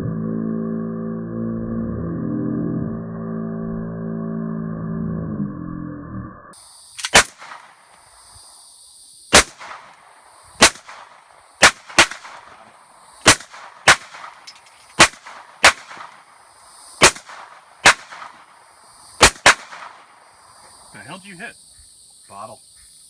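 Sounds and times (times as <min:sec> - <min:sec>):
gunshots with ringing echo: 0:07.0 - 0:07.8, 0:09.3 - 0:20.3.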